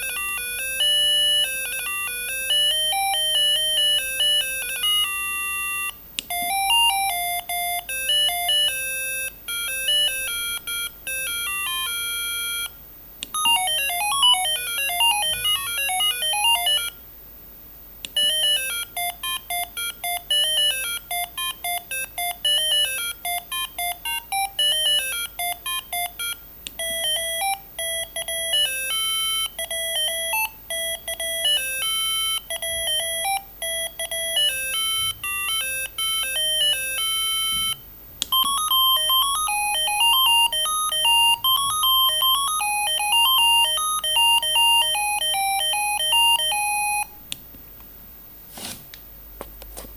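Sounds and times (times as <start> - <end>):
electronic beeping ringtone melodies: 0.0 - 12.8, 13.4 - 17.0, 18.2 - 47.2.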